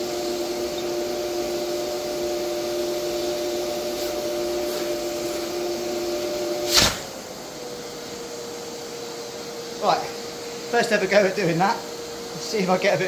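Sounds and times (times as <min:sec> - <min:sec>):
vacuum cleaner motor: 0:00.0 - 0:13.0
short loud burst: 0:06.6 - 0:07.2.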